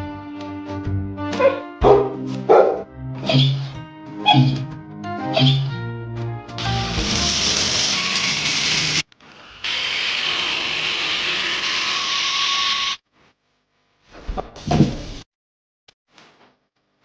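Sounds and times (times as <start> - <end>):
vacuum cleaner running: 6.6 - 9.0.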